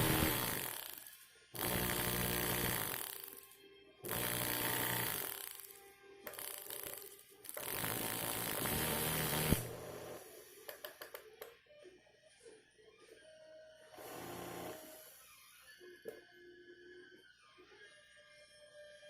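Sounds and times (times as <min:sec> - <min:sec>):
blender motor whirring: 0:00.0 - 0:03.4, 0:04.1 - 0:05.7, 0:06.3 - 0:10.5, 0:14.0 - 0:15.4.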